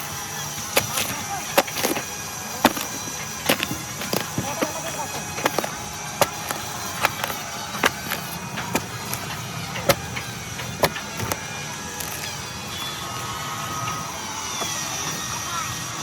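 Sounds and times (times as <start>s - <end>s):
wood being struck: 0.8s - 12.4s.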